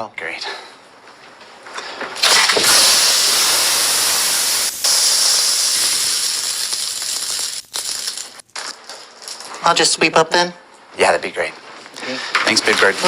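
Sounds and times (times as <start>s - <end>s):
loud steady hiss: 2.2s - 8.5s.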